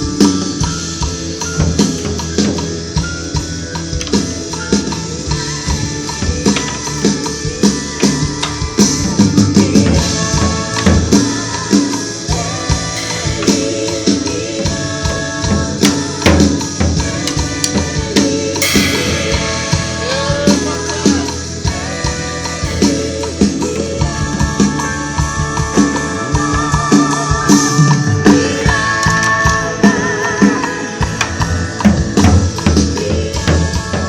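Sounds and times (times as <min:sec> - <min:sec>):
music with drums and percussion: 0:00.0 - 0:34.0
sharp percussion hits: 0:18.6 - 0:22.0.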